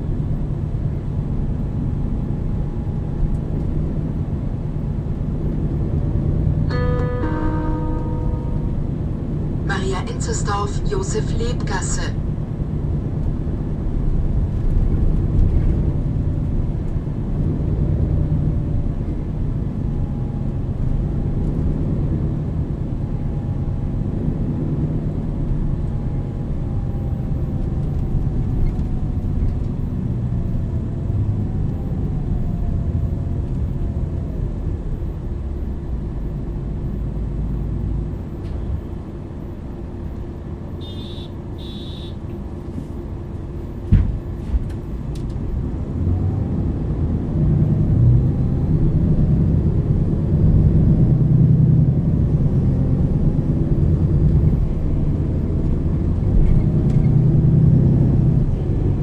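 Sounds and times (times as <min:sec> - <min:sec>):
bus engine rumble with gear whine: 0:00.0 - 0:59.0
short high-pitched sounds: 0:06.7 - 0:09.1.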